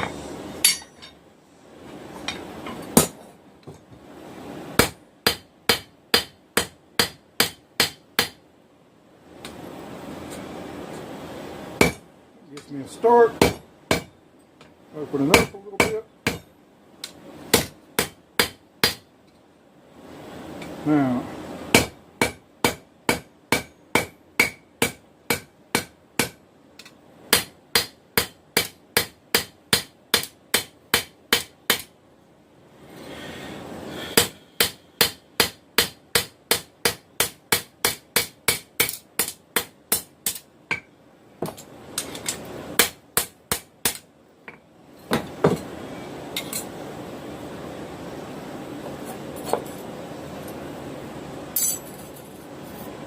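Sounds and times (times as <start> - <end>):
hammer striking steel on anvil: 0.0 - 1.2, 4.8 - 8.4, 11.8 - 12.0, 13.4 - 14.1, 15.3 - 16.5, 21.8 - 31.9, 34.2 - 45.7.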